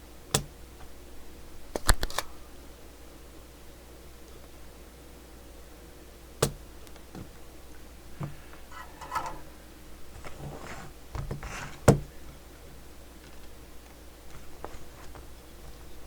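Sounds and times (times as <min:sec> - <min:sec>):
desoldering pump snapping: 0:00.3 - 0:01.0, 0:01.7 - 0:02.3, 0:06.4 - 0:09.5
handling and scraping noises: 0:08.1 - 0:16.0.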